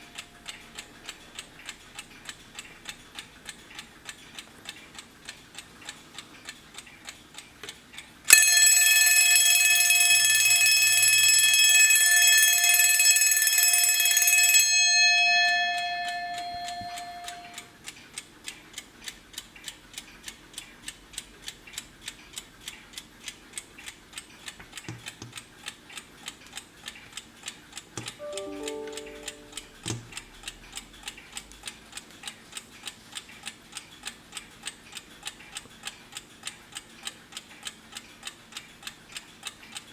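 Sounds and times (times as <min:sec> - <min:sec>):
alarm clock ticking: 0:00.0 - 0:39.9
alarm bell ringing: 0:08.3 - 0:17.7, 0:28.2 - 0:29.9.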